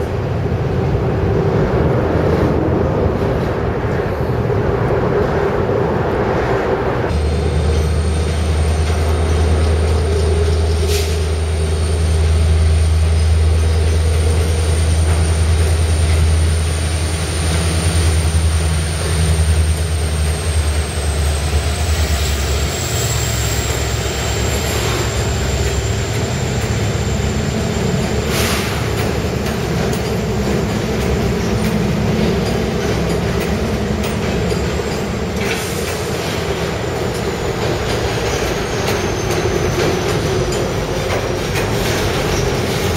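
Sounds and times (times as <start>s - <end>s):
train wheels on rails: 0.0s - 42.9s
sharp clicks from rail joints: 28.3s - 42.9s.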